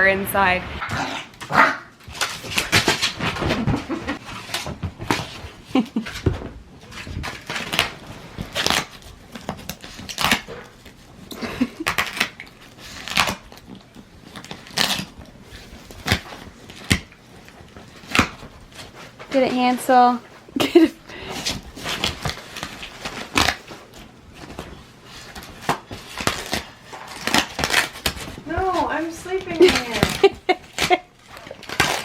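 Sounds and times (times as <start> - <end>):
dog chewing styrofoam: 0.8 - 32.0.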